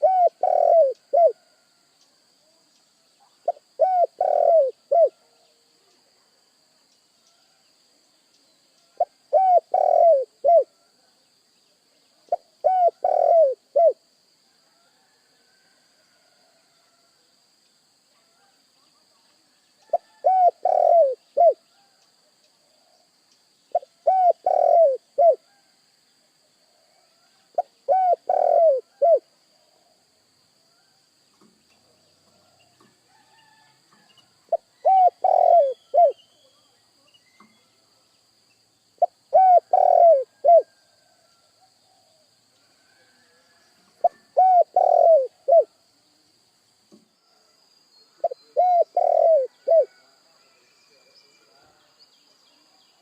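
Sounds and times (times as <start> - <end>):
dove cooing: 0.0 - 1.5, 3.4 - 5.3, 9.0 - 10.7, 12.3 - 14.0, 19.9 - 21.9, 23.7 - 25.6, 27.0 - 29.2, 34.5 - 36.2, 39.0 - 40.8, 44.0 - 45.7, 48.2 - 50.0.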